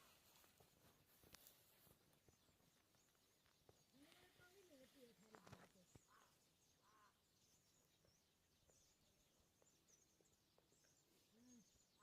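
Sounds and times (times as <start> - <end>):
faint bird chirping: 0.0 - 12.0
short arched bird calls: 5.9 - 7.7.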